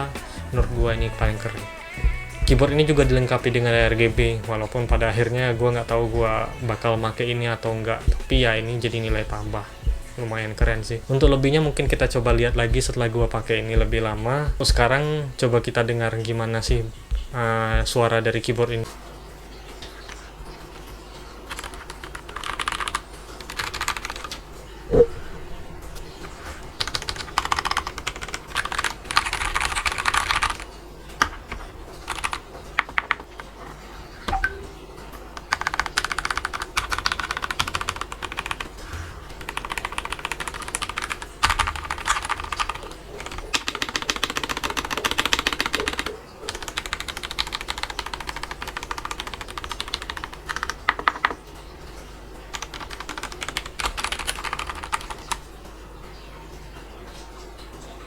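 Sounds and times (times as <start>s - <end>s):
mechanical keyboard typing: 21.4s - 24.4s, 26.8s - 33.4s, 35.4s - 51.4s, 52.5s - 55.4s.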